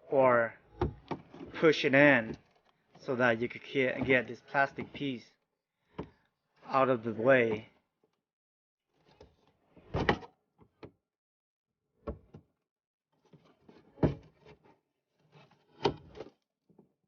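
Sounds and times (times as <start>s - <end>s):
plastic knocks and clicks: 0.7s - 1.4s.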